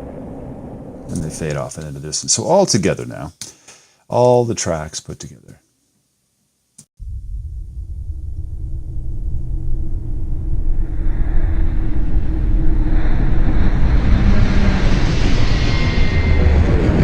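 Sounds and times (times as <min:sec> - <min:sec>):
deep spaceship engine rumble: 0:07.0 - 0:17.0.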